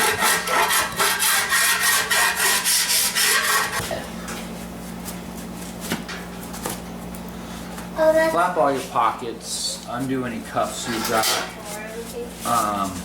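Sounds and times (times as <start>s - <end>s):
hand file rasping over filler: 0.0s - 3.8s.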